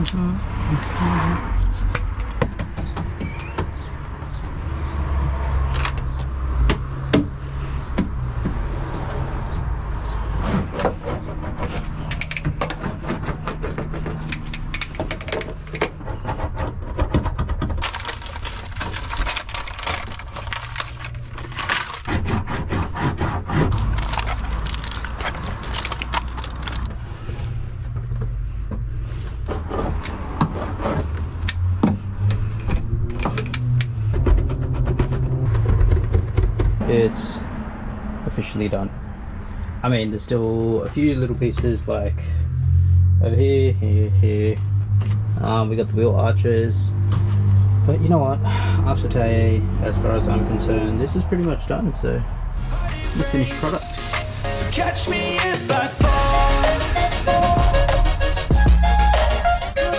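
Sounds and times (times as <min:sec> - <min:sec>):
clicks and scrapes inside a car: 0:01.7 - 0:04.5, 0:05.2 - 0:36.8.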